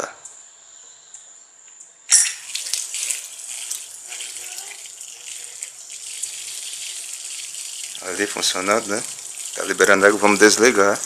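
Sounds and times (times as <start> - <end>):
water rushing through valve: 2.4 - 11.0.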